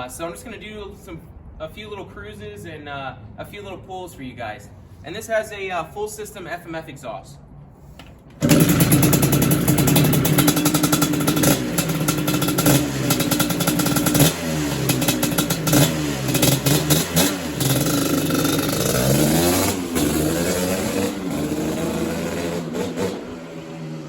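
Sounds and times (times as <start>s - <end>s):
quad engine revving: 8.4s - 24.0s.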